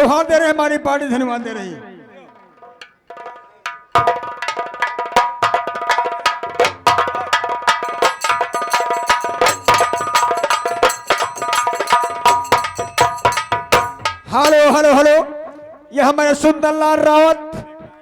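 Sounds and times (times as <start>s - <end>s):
fast drum strokes: 2.6s - 15.3s
ringing metallic percussion: 2.6s - 15.4s
held notes: 7.6s - 15.2s.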